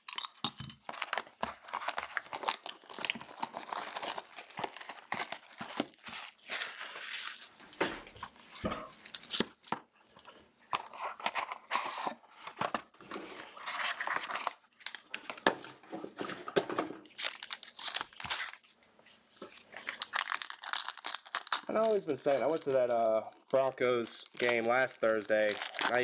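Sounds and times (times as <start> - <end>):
card pack wrappers crinkling: 0.0 - 8.3, 8.9 - 9.8, 13.6 - 15.4, 17.1 - 18.8, 19.4 - 26.0
cards being shuffled: 19.5 - 26.0.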